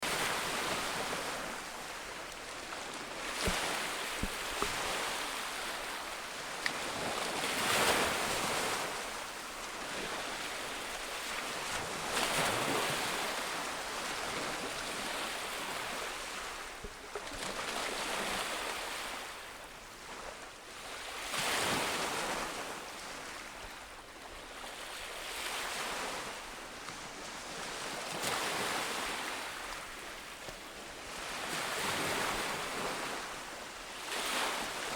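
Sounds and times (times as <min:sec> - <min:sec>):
ocean waves breaking: 0:00.0 - 0:09.2.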